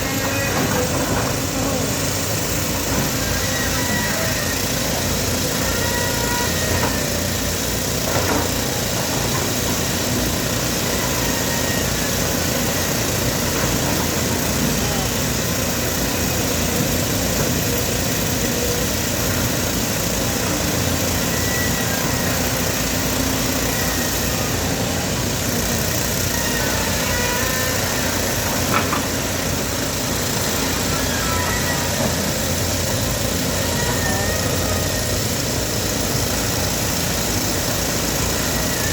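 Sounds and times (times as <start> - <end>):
heavy machinery diesel engine: 0.0 - 38.9.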